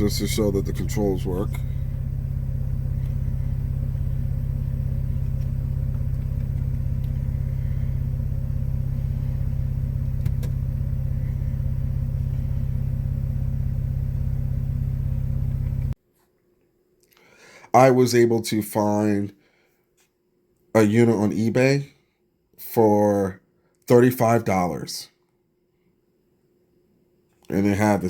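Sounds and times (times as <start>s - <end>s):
car engine idling: 0.0s - 16.0s
click: 10.2s - 10.6s.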